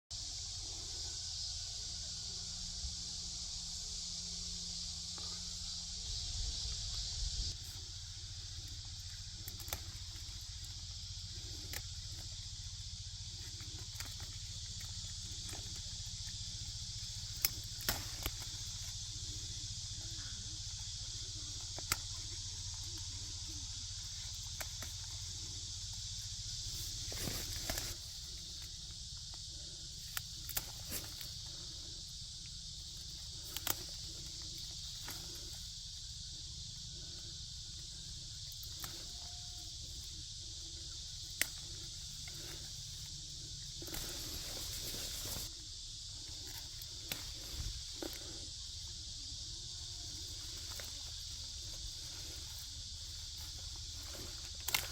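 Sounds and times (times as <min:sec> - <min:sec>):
cicada chorus: 0:00.1 - 0:54.9
rustle of pepper plants: 0:04.8 - 0:54.9
chili peppers snapping off stems: 0:17.0 - 0:18.7, 0:30.1 - 0:31.3.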